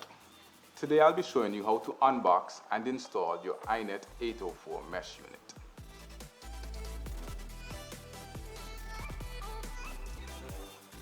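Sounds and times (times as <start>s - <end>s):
electronic music with kick drum: 3.6s - 11.0s.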